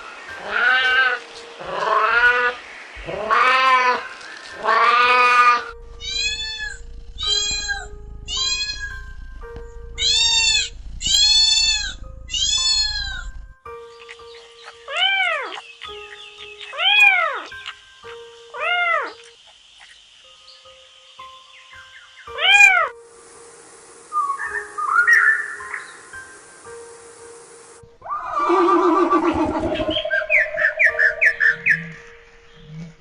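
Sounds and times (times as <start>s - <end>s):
cat meowing: 4.7s - 9.1s, 10.0s - 13.4s, 18.6s - 19.2s, 22.3s - 22.9s.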